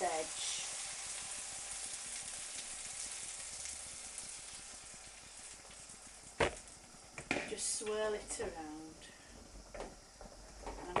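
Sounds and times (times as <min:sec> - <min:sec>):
eggs sizzling in a frying pan: 0:00.0 - 0:11.0.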